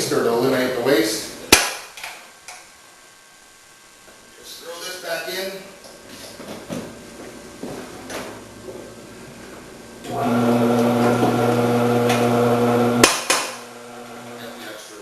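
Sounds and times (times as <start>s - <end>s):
cutter motor humming: 10.1s - 14.6s.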